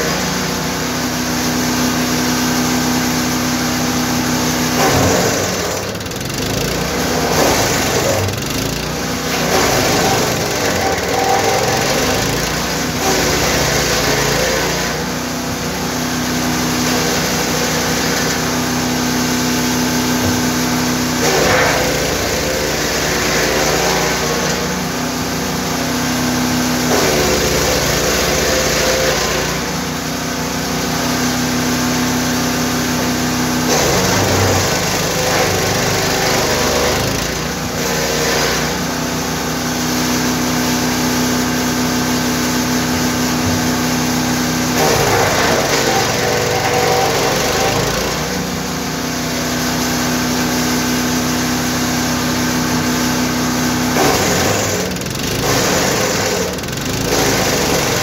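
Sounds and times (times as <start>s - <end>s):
wood chipper engine running: 0.0s - 58.0s.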